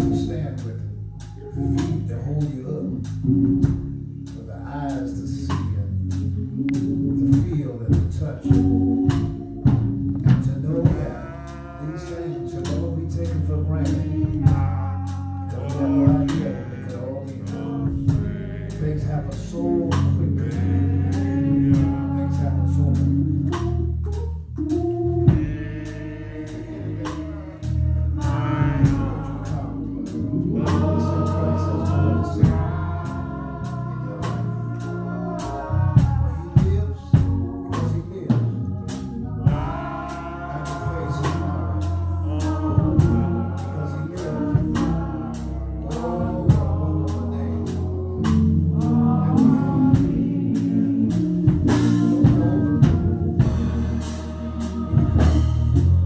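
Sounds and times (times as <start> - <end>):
bass: 0.0 - 56.0
group singing gospel: 0.0 - 56.0
drum beat: 14.3 - 18.8, 30.6 - 35.0, 39.4 - 41.8.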